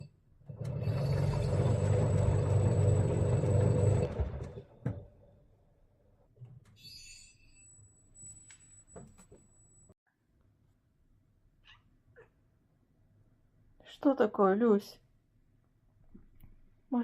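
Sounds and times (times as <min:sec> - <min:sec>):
washing machine rumbling: 0:00.4 - 0:05.4.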